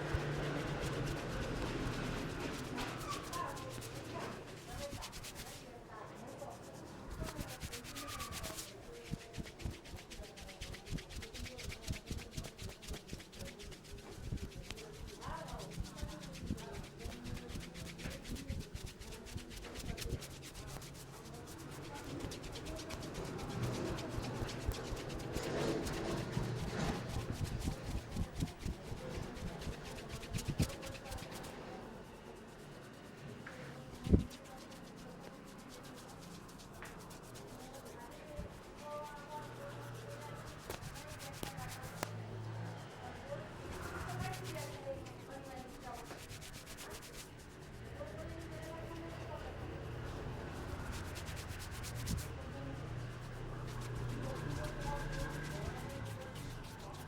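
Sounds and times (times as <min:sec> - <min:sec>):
hands rubbing over hair: 0:00.0 - 0:49.3, 0:49.9 - 0:57.0
hands patting on body: 0:04.7 - 0:05.6, 0:07.1 - 0:21.1, 0:21.8 - 0:31.5, 0:40.1 - 0:42.2.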